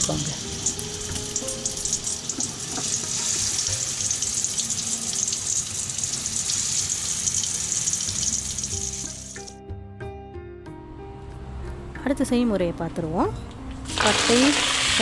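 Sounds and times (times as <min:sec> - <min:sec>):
fish sizzling in hot oil: 0:00.0 - 0:09.6, 0:13.9 - 0:15.0
background music: 0:00.0 - 0:15.0.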